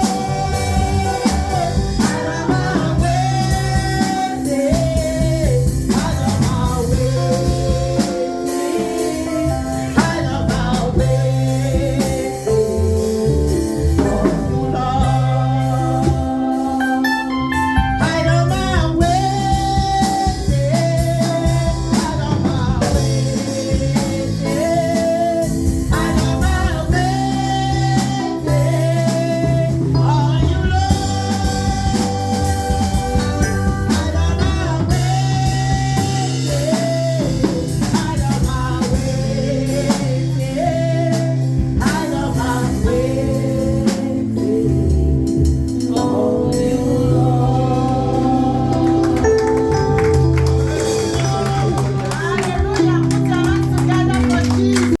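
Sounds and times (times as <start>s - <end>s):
band with drums: 0.0s - 55.0s
woman singing: 50.8s - 55.0s.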